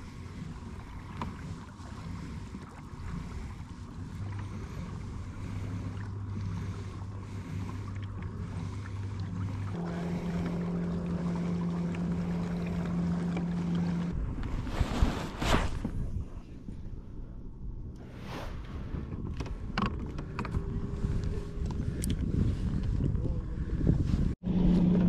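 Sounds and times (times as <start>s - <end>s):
wind noise on microphone: 14.1s - 17.1s, 18.1s - 25.0s.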